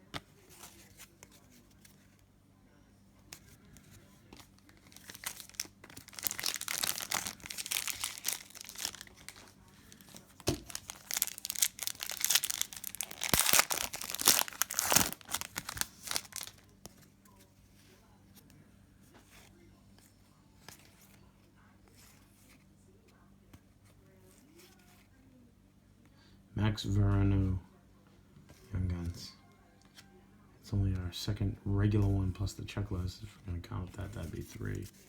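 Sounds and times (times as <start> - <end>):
plastic foil wrapper tearing and crinkling: 4.4 - 16.7.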